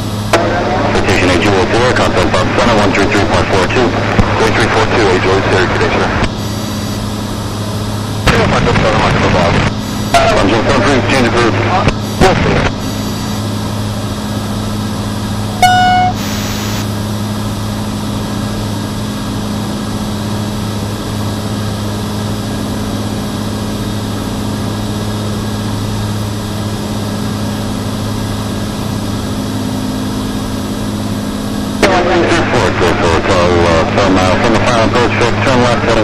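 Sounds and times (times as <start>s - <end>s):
aircraft engine and propeller drone: 0.0s - 36.0s
short beep: 15.6s - 16.9s.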